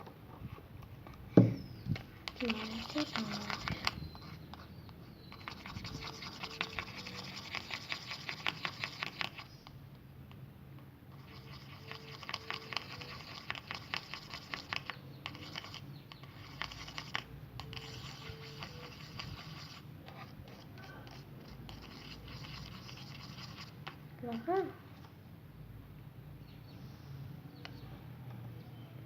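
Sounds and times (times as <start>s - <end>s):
utensil scraping container sides: 1.6s - 9.5s, 11.1s - 24.4s
slime stirred in container: 2.1s - 9.6s, 11.1s - 24.4s.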